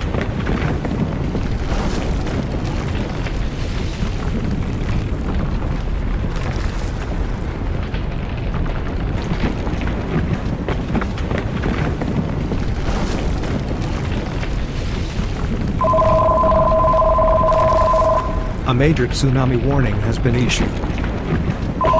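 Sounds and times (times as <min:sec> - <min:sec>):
deep rumble with crackles: 0:00.0 - 0:21.9
two-tone electronic alert tone: 0:15.8 - 0:18.6.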